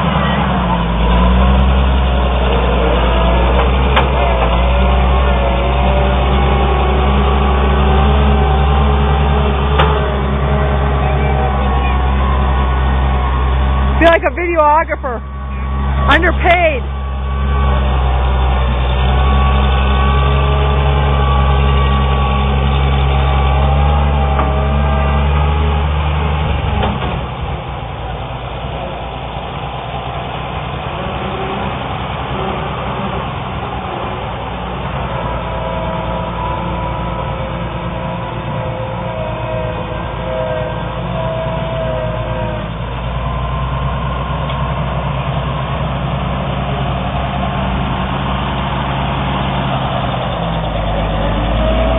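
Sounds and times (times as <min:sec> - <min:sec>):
tractor engine running: 0:00.0 - 0:51.9.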